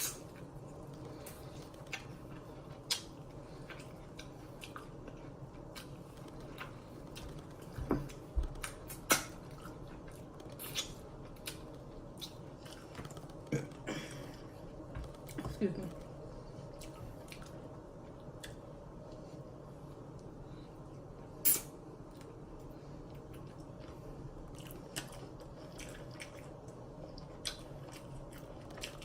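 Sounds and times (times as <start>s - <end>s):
wet chewing and lip smacking: 0.0s - 13.5s, 21.5s - 29.0s.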